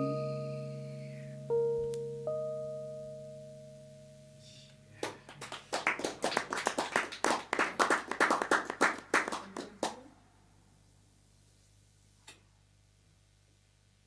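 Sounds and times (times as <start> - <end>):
piano chord: 0.0 - 5.3
audience applauding: 5.0 - 10.1.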